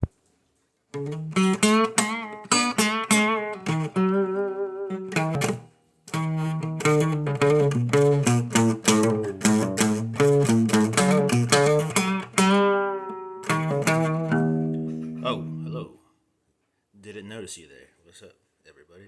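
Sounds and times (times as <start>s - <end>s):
solo guitar picking notes: 0.9s - 16.0s.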